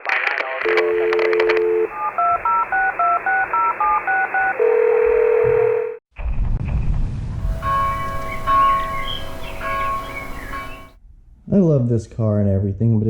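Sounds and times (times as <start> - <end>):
touch-tone key beeps: 0.7 - 5.4
telephone dial tone: 0.7 - 6.0
steady single tone: 7.4 - 11.0.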